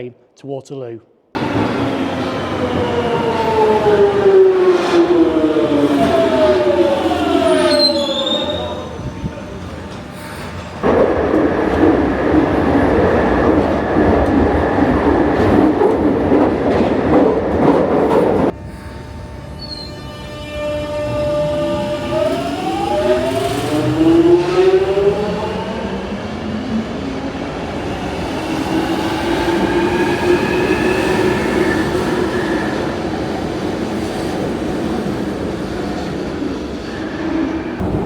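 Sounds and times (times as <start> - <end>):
train running rumble: 8.8 - 20.0.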